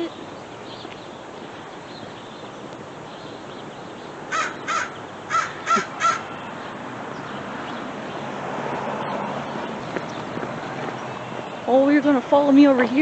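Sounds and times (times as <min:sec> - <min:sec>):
crow cawing: 0:04.3 - 0:06.4.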